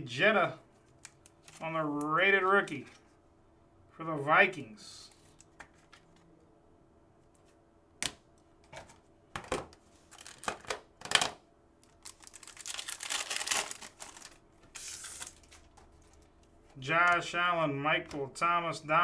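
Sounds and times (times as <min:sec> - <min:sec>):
foil wrapper crinkling: 0:10.1 - 0:10.6, 0:11.8 - 0:16.3.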